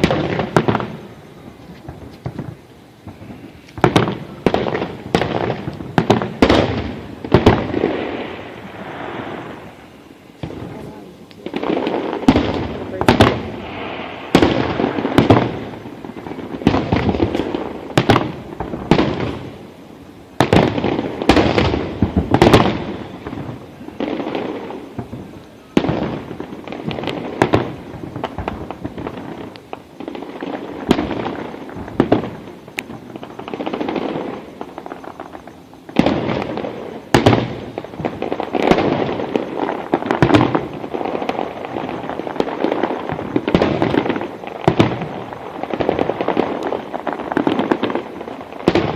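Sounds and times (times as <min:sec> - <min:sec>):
fireworks bursting: 0:00.0 - 0:48.9
fireworks rumble and crackle: 0:00.0 - 0:48.9.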